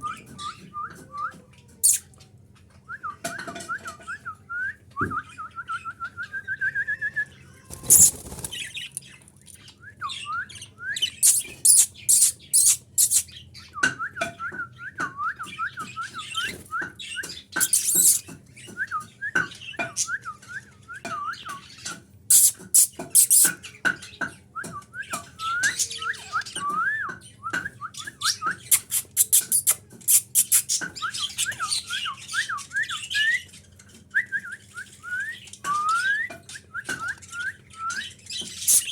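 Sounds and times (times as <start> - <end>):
harsh squawks: 7.6 - 8.4
budgerigars chirping: 7.8 - 8.9, 11.0 - 13.5, 17.2 - 18.3, 22.3 - 24.2, 38.4 - 38.9.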